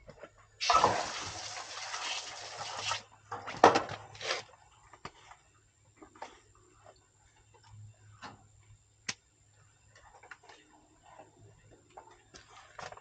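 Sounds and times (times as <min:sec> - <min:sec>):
faint low hum: 0:03.0 - 0:13.0.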